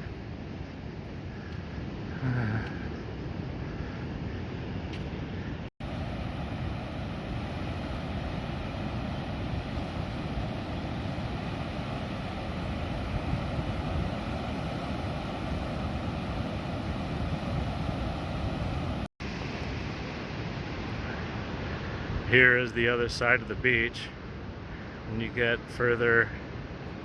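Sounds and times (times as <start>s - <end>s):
ocean surf: 0.0s - 27.0s
wind buffeting microphone: 3.1s - 19.1s.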